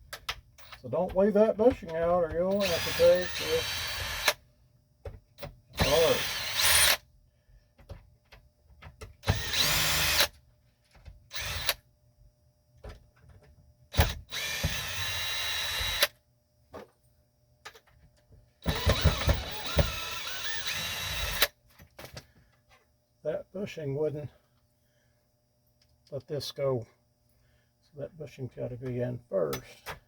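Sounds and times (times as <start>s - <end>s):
cordless drill running: 2.5s - 4.4s, 5.7s - 7.0s, 9.2s - 10.3s, 11.3s - 11.8s, 14.0s - 16.1s, 18.6s - 21.5s.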